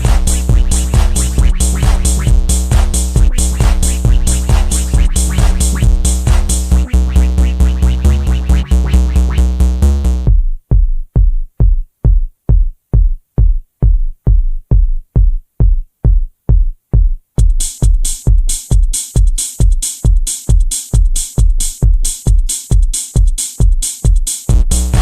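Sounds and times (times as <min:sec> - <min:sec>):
electronic music: 0:00.0 - 0:10.4, 0:17.4 - 0:25.0
steady kick drum: 0:00.0 - 0:25.0.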